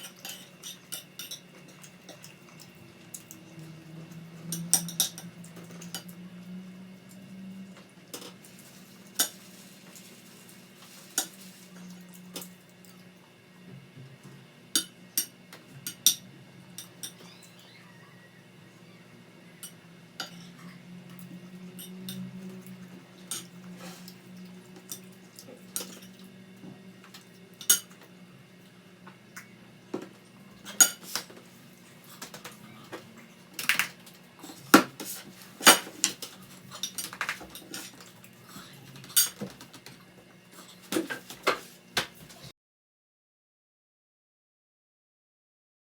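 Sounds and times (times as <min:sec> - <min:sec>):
utensils clinking on plates: 0:00.0 - 0:03.7, 0:04.4 - 0:06.1, 0:08.1 - 0:12.5, 0:14.8 - 0:17.4, 0:19.6 - 0:20.7, 0:21.7 - 0:26.2, 0:27.0 - 0:28.1, 0:30.0 - 0:42.5.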